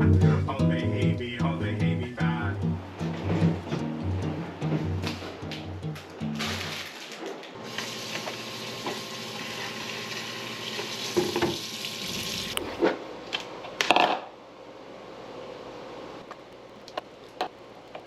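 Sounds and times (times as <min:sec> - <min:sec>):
water running from tap: 0:07.6 - 0:12.8.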